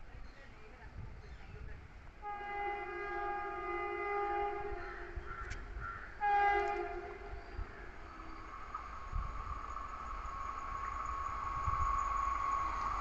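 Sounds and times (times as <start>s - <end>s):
locomotive horn blast: 2.2s - 5.3s, 6.2s - 8.1s.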